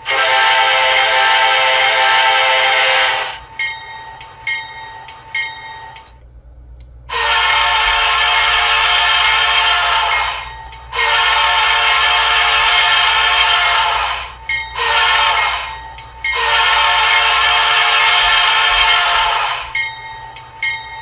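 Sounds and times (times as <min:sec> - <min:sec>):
air horn long blast: 0:00.0 - 0:03.4, 0:07.1 - 0:10.4, 0:11.0 - 0:15.7, 0:16.4 - 0:19.7
locomotive air horn chord: 0:00.0 - 0:03.4, 0:07.1 - 0:19.8.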